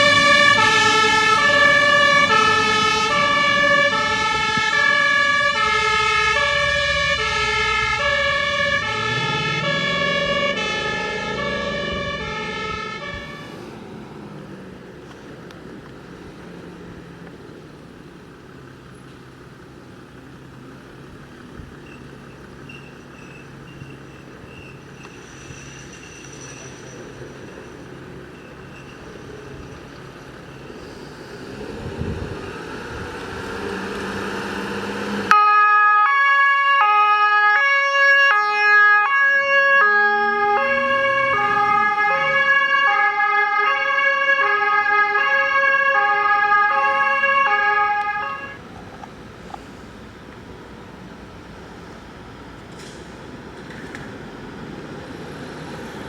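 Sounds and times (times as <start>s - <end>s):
fire engine two-tone siren: 0.0s - 13.8s, 31.4s - 48.8s
street and engine noise: 0.0s - 56.0s.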